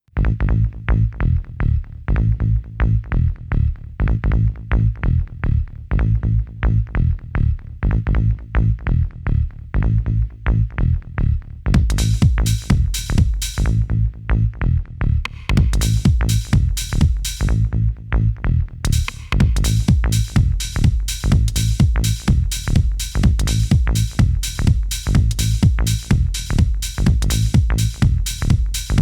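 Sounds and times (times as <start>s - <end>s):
synth bass: 0.1s - 29.0s
kick drum beat: 11.7s - 13.9s, 15.3s - 17.6s, 18.9s - 29.0s.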